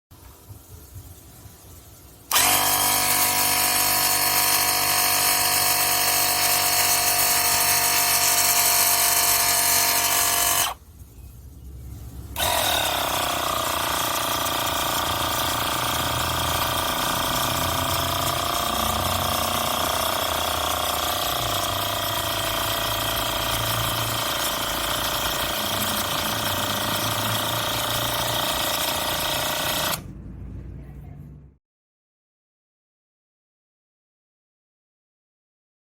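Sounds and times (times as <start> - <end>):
air compressor motor running: 2.2 - 10.8, 12.3 - 30.2.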